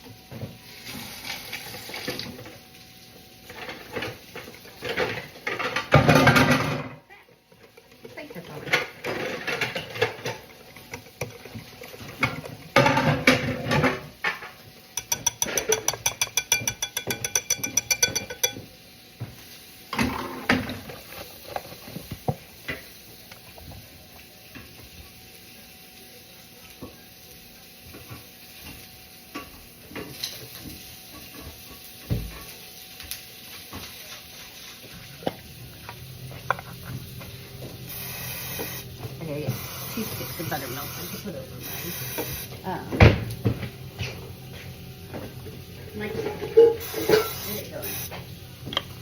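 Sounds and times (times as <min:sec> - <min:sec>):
dishes clattering: 0:03.5 - 0:07.0, 0:08.6 - 0:18.7, 0:19.9 - 0:21.8, 0:46.0 - 0:47.5
dishes clinking and knocking: 0:04.8 - 0:07.0, 0:08.6 - 0:18.7, 0:46.1 - 0:47.4.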